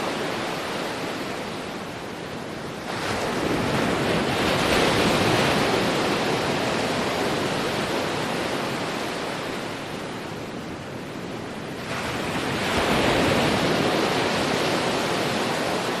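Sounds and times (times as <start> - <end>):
ocean waves breaking on beach: 0.0 - 16.0.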